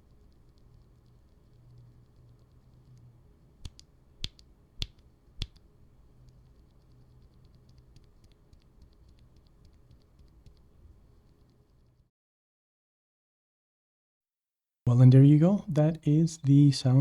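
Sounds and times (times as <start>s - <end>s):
faint rapid muted ticks: 0.0s - 12.0s.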